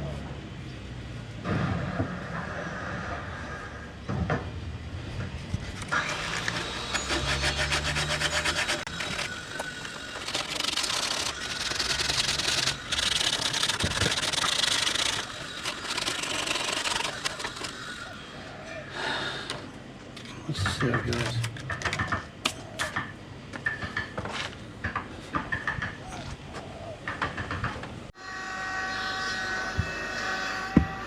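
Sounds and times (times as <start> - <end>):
sandpaper rasping on wood: 5.6 - 9.4, 10.0 - 17.7.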